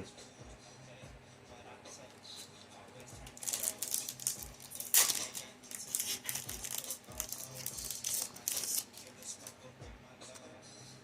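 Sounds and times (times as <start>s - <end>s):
foil wrapper crinkling and tearing: 3.3s - 9.4s.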